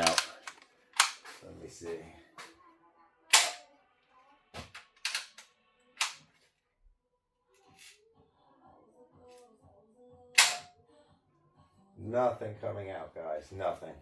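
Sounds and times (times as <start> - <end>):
air rifle action clicking: 0.0 - 1.4, 3.3 - 3.6, 5.0 - 5.4, 10.4 - 10.7.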